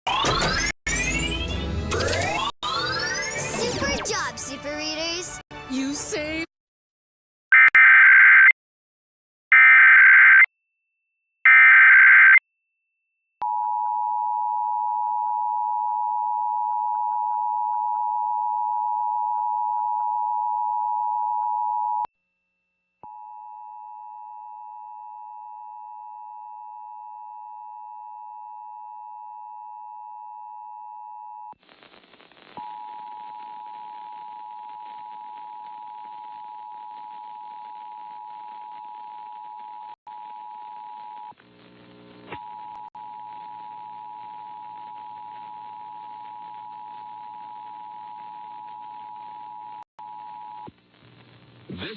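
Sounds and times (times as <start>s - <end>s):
crackle: 31.5s - 51.7s.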